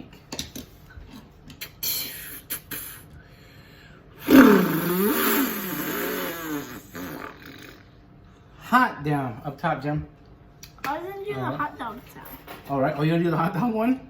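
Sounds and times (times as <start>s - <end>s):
person imitating revving car engine: 4.2s - 7.8s.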